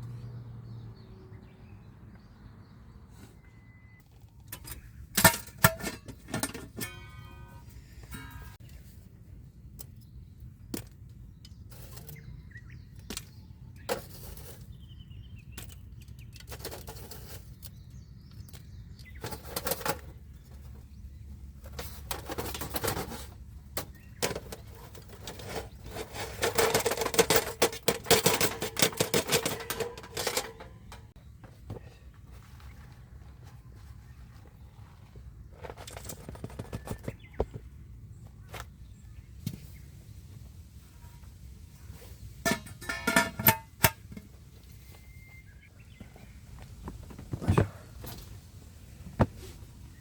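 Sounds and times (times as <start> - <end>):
handling knocks and rustles: 4.1 - 40.4, 41.8 - 50.0
rapid clattering and rustling: 18.6 - 31.8, 35.6 - 37.7.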